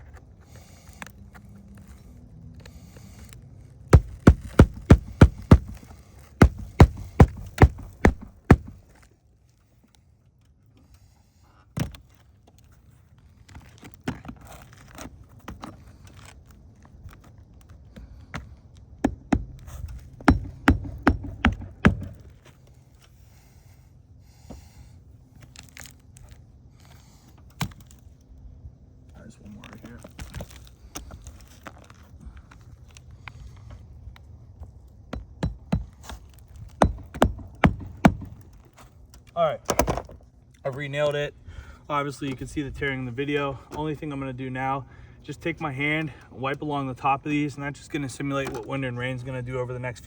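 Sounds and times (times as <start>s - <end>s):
hatchet hammering nails: 3.9s - 8.8s, 19.0s - 22.3s, 35.1s - 36.2s, 36.8s - 38.5s.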